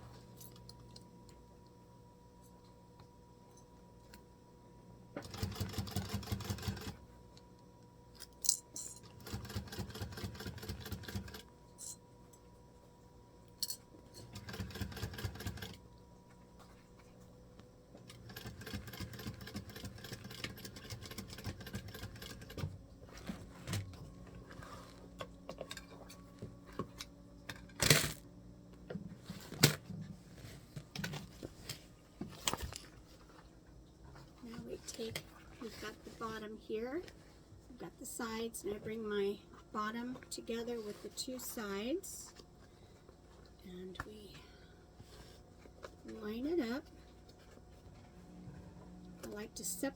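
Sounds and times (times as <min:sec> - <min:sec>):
sewing machine clicking rapidly: 0:05.2 - 0:07.0, 0:09.1 - 0:11.4, 0:14.3 - 0:15.8, 0:18.2 - 0:22.6.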